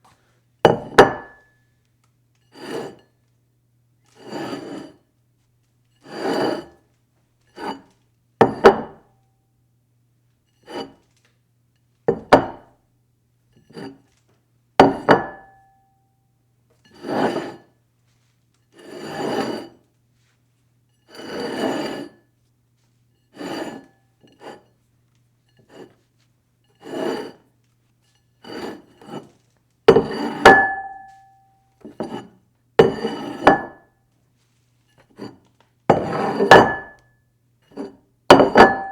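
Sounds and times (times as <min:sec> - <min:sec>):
dish scraping across table: 0:02.5 - 0:03.1, 0:04.2 - 0:05.0, 0:06.0 - 0:06.8, 0:07.5 - 0:09.0, 0:10.6 - 0:11.0, 0:16.9 - 0:17.7, 0:18.8 - 0:19.8, 0:21.1 - 0:22.2, 0:23.3 - 0:24.7, 0:25.6 - 0:26.0, 0:26.7 - 0:27.5, 0:28.4 - 0:31.2, 0:31.8 - 0:33.8, 0:35.0 - 0:37.0.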